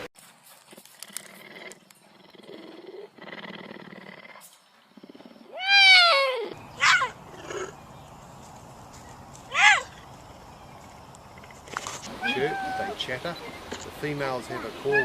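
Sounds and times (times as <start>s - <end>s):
wild cat purring: 0.7s - 5.6s, 7.2s - 7.9s, 9.8s - 14.6s
wild cat meow-like call: 12.1s - 13.1s.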